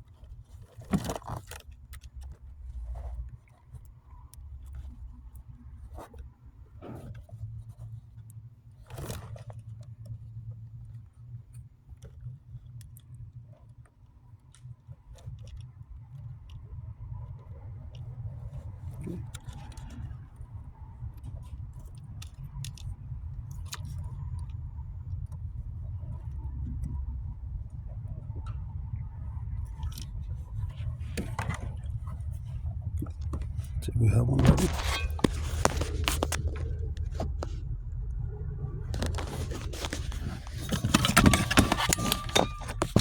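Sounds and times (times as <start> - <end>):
steady low hum: 16.0 - 43.0
hand tools and wires clicking: 34.4 - 37.6, 39.0 - 43.0.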